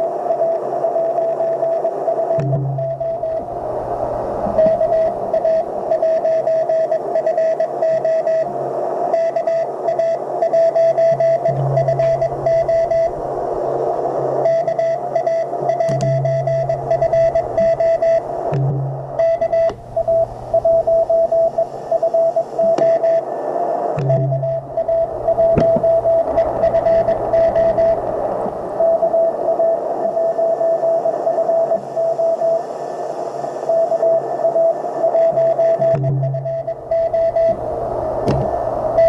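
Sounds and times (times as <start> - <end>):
radio hiss: 0.0 - 39.0
morse code tone beeping: 1.0 - 8.5, 9.2 - 13.5, 14.3 - 23.2, 24.0 - 32.6, 33.7 - 39.0
low hum: 2.4 - 6.7, 10.7 - 30.1, 35.3 - 39.0.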